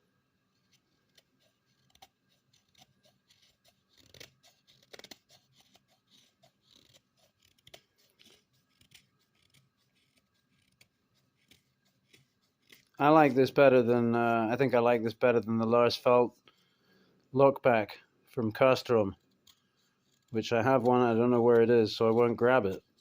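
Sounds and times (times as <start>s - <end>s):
pocket knife clicking and scraping: 1.1s - 13.0s.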